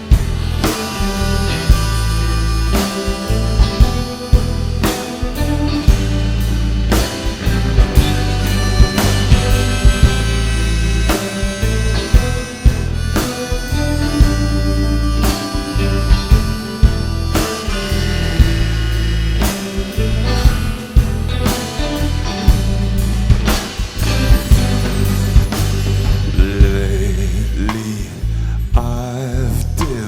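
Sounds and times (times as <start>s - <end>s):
harmonica lead: 0.0s - 30.0s
rock band playing: 0.0s - 30.0s.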